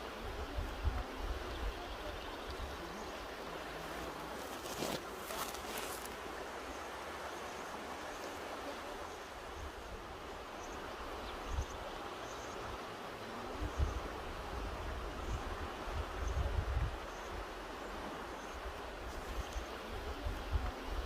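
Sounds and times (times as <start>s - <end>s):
mountain river rushing: 0.0s - 21.0s.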